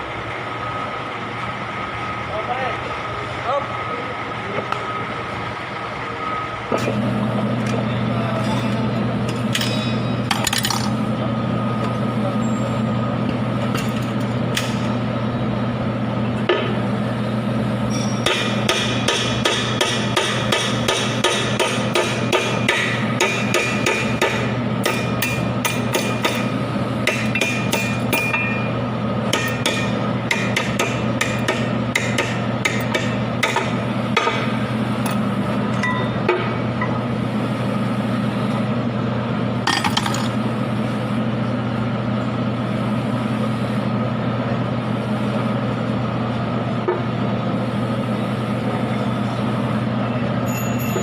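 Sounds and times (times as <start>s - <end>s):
steady low hum: 0.0s - 50.4s
hammer tapping on metal: 18.2s - 28.6s, 29.3s - 34.5s.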